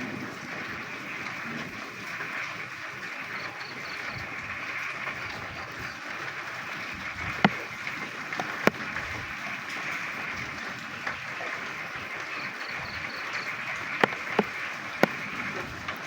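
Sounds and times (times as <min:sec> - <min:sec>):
steady rain: 0:00.0 - 0:16.0
frogs croaking: 0:03.0 - 0:05.0, 0:05.6 - 0:15.6
sharp taps: 0:14.0 - 0:15.2.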